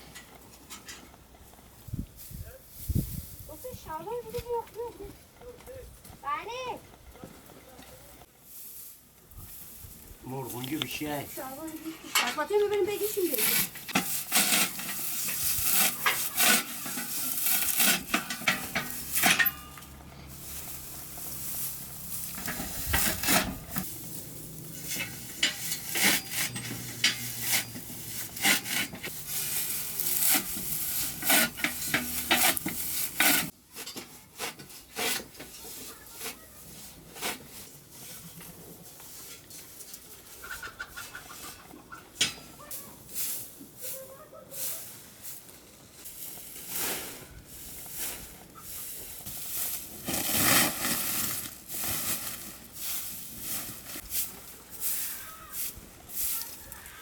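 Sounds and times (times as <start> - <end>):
knocks clatter and scraping: 0.0 - 1.8, 10.3 - 42.7, 47.6 - 54.6
chickens clucking: 40.0 - 42.7, 48.3 - 49.2.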